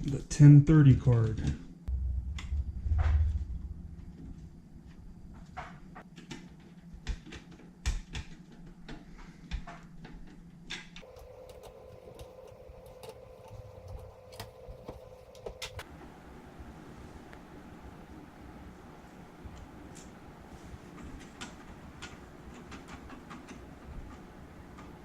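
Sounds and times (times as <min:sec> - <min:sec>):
faint steady hum: 0:00.0 - 0:25.0
computer parts clicking and knocking: 0:05.3 - 0:15.8, 0:21.0 - 0:25.0.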